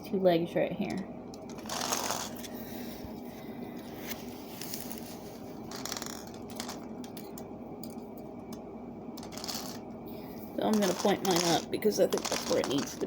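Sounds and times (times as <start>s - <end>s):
wire scraping and clicking: 0.9s - 2.5s, 5.7s - 8.6s, 9.2s - 9.9s, 10.7s - 13.0s.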